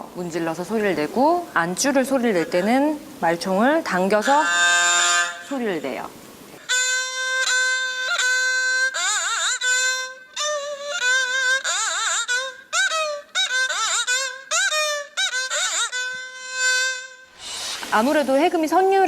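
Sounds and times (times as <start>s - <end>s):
bowed fiddle solo: 4.1s - 5.8s, 6.6s - 18.3s.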